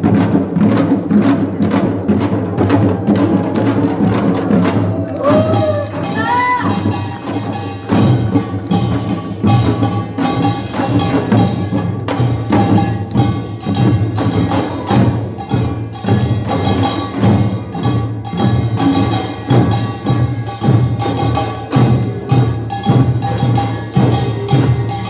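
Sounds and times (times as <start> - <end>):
drums in fast rhythm: 0.0 - 25.0
ringing hand gongs: 5.3 - 25.0.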